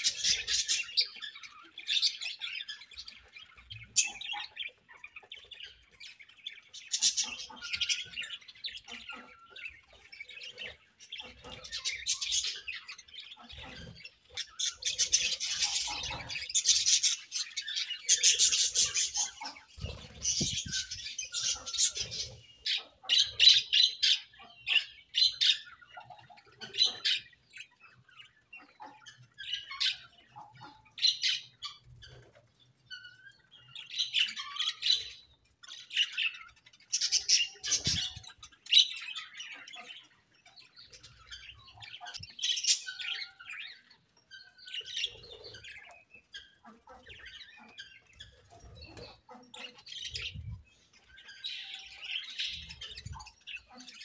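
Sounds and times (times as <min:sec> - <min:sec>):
budgerigars chirping: 0:00.0 - 0:54.0.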